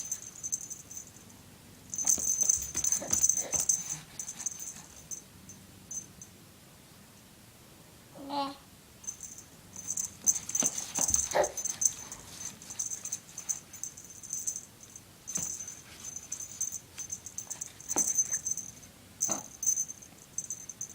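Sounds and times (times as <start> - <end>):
cat toy jingling and rattling: 0.0 - 5.3, 5.9 - 6.2, 9.0 - 20.9.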